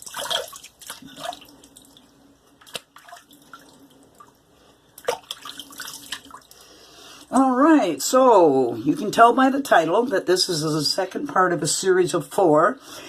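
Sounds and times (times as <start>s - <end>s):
water splashing as face rinsed: 0.0s - 6.8s.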